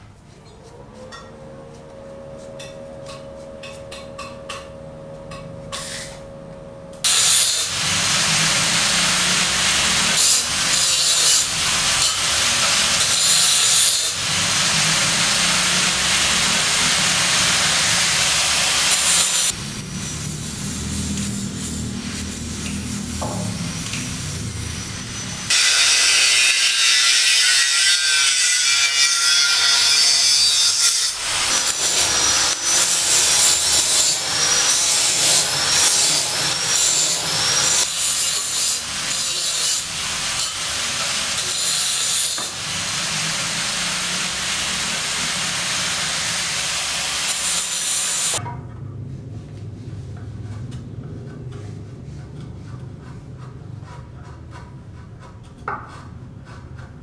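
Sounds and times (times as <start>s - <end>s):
rasping cutting tool: 7.1s - 48.4s.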